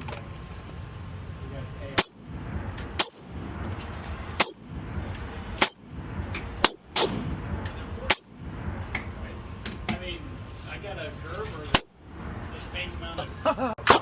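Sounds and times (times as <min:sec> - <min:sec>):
rifle shots: 0:02.0 - 0:02.2, 0:06.6 - 0:07.3.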